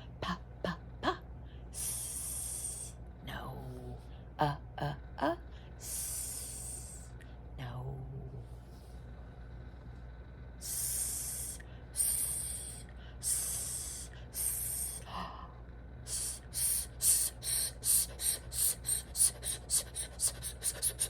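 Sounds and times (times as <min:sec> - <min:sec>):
woman hissing: 0:10.6 - 0:15.1, 0:16.1 - 0:21.0.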